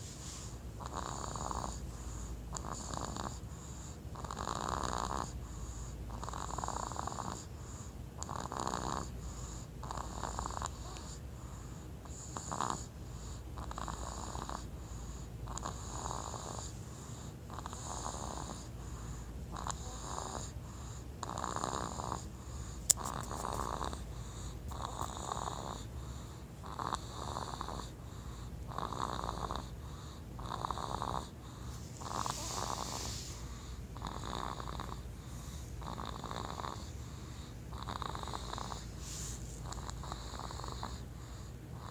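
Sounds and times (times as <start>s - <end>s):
baby snoring: 0.2s - 41.9s.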